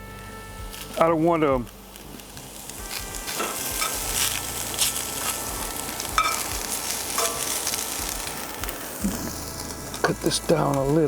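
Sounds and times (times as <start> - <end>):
food sizzling in a pan: 0.0 - 11.0
utensil clinking against pan: 7.2 - 7.6.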